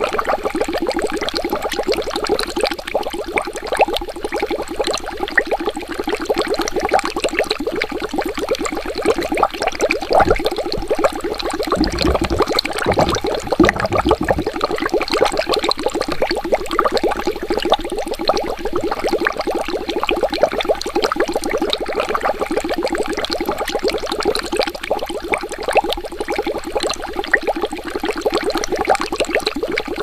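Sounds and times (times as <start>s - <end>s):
deep gurgles: 10.1s - 15.0s
water bubbling: 10.1s - 15.0s.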